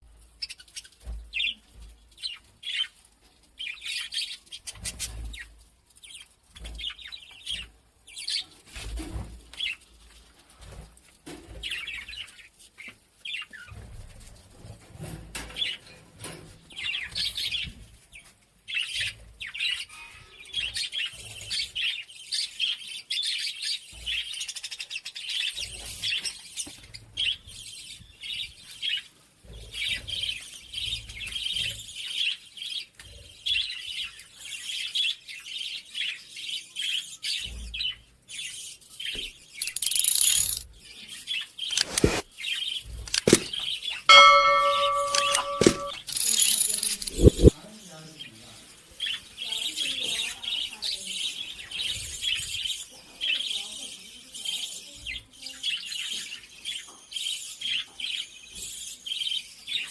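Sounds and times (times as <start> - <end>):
birds chirping: 18.7 - 59.9.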